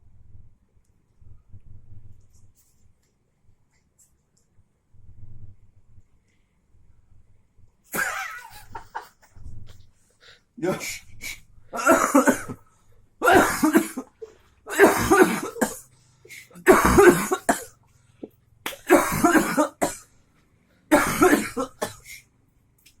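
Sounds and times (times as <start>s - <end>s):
person coughing: 10.6s - 12.6s, 13.2s - 14.1s, 14.7s - 17.7s, 18.7s - 20.0s, 20.9s - 22.2s.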